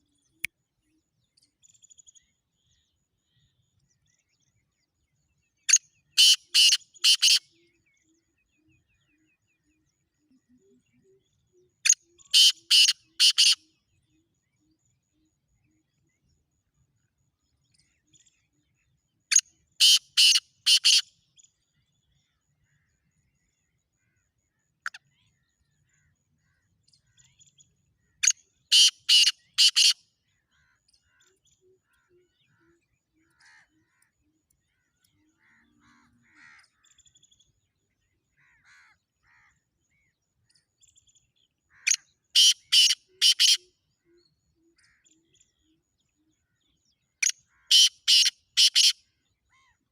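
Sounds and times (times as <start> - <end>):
faint bird chirps: 0.0 - 49.9
bird harsh grating calls: 28.7 - 30.0, 41.8 - 43.6, 47.7 - 48.9.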